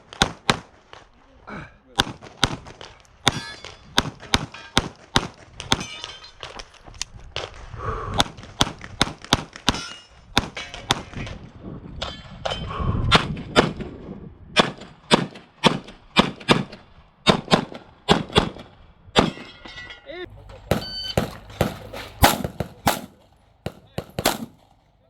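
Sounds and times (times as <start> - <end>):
steel targets ringing: 19.3 - 24.8
pistol shots: 20.3 - 25.0.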